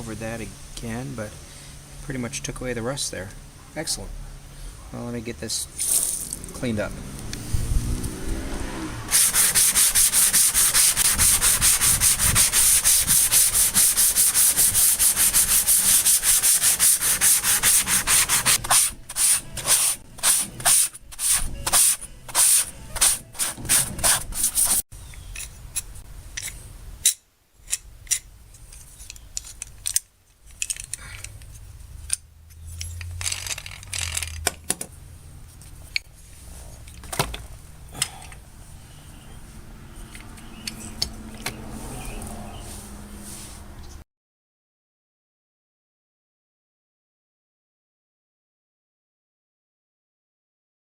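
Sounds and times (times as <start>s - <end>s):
handling noises: 5.6s - 8.1s, 27.6s - 38.4s
scrubbing metal surface: 9.1s - 24.8s.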